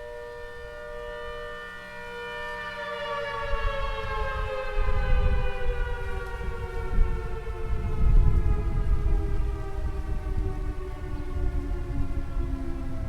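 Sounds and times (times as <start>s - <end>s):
distant two-tone siren: 0.0s - 13.0s.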